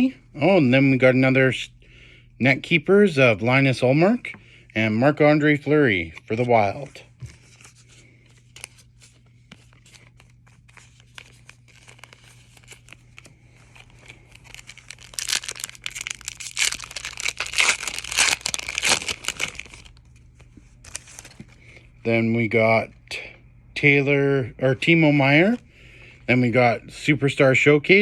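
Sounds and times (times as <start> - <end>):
wrapper tearing and crinkling: 9.7 - 20.2, 20.8 - 21.5.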